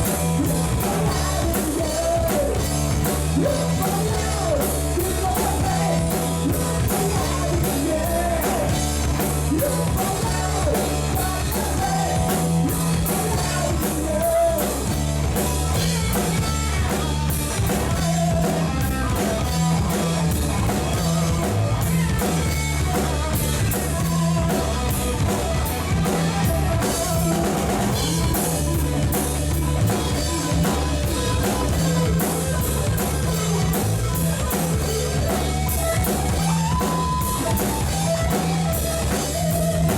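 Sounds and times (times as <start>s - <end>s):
person singing: 0.0s - 15.0s
rock music: 0.0s - 39.9s.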